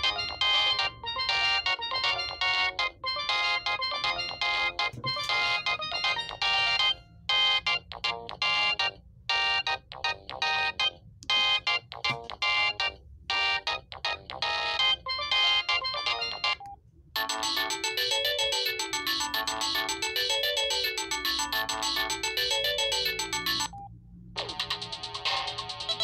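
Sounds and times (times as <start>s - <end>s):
electronic ringtone melody: 0.0s - 16.6s, 17.2s - 23.8s
sliding electronic tone: 17.2s - 23.7s.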